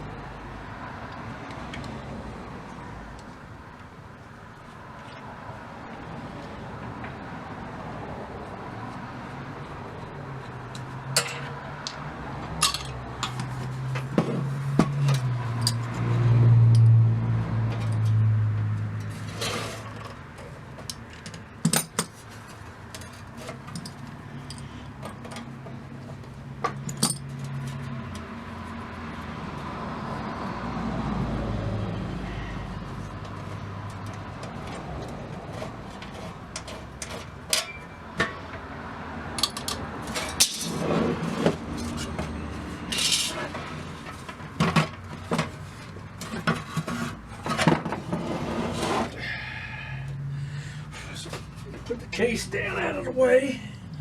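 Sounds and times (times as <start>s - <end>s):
metal parts clinking and knocking: 12.6s - 13.5s, 19.4s - 22.2s, 22.9s - 25.5s, 26.6s - 27.8s, 39.4s - 40.9s, 42.9s - 45.6s.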